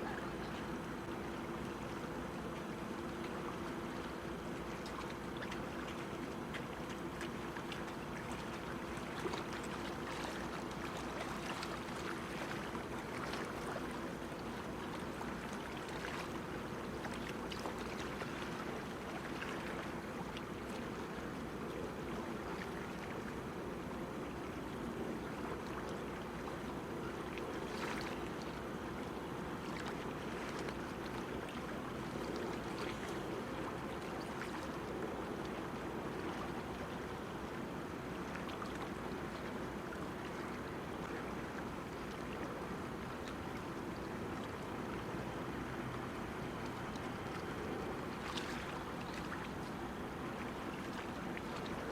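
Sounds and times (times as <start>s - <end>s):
faint steady hum: 0.0s - 51.9s
water washing against breakwater: 3.1s - 23.3s
small splashes: 3.2s - 21.4s, 38.2s - 51.9s.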